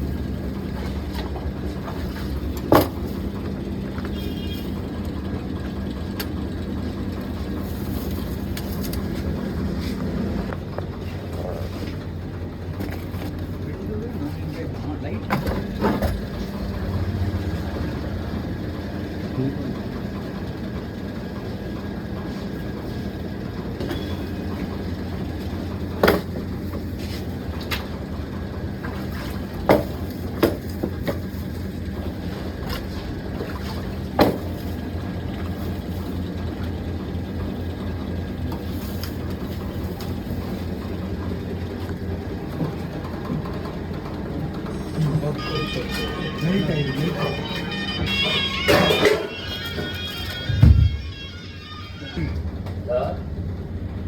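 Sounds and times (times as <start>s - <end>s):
factory machinery humming: 0.0s - 54.0s
sharp knocks and clanks: 0.8s - 3.2s, 25.9s - 26.9s, 45.7s - 51.5s.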